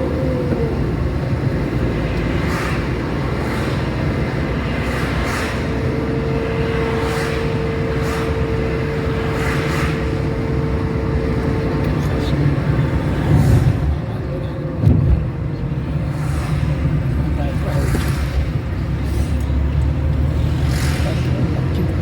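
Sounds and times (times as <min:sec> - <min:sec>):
car road and engine noise: 0:00.0 - 0:22.0
passing traffic whooshes: 0:00.0 - 0:22.0
steady hum: 0:04.1 - 0:18.6.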